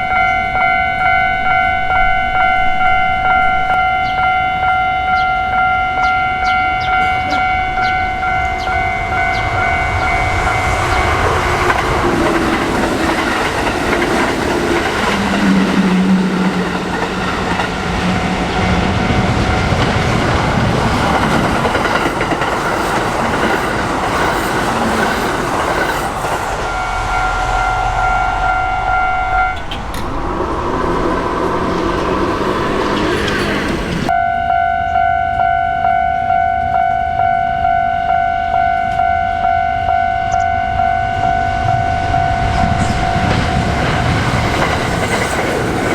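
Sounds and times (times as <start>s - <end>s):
level-crossing warning bell: 0.0s - 45.9s
train wheels clattering over rails: 7.8s - 27.1s, 28.9s - 34.1s, 42.6s - 45.9s
low held tone: 26.6s - 32.2s.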